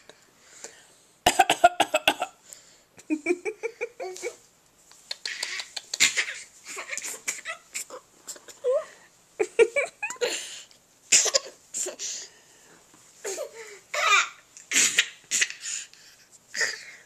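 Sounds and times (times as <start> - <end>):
child fake-coughing: 1.3 - 2.4, 13.3 - 15.6
child laughing: 9.4 - 10.4.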